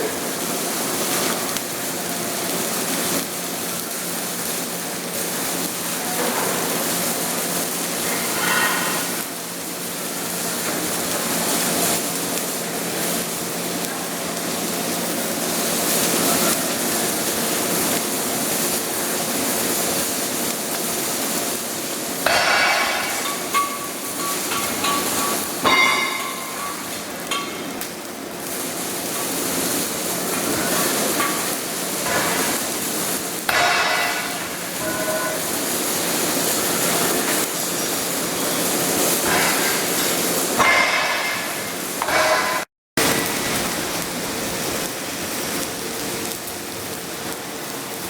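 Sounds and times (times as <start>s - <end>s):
welding arc hissing crackle: 0.0s - 48.0s
ringing metallic clanks: 22.3s - 27.7s.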